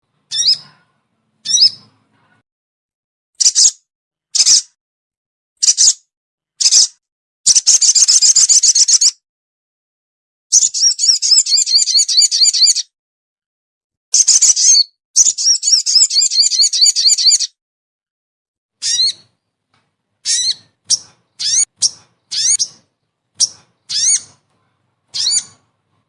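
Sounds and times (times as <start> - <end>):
bird calls: 0.3 - 0.8, 1.4 - 1.9, 18.8 - 19.4, 20.2 - 24.4, 25.1 - 25.7.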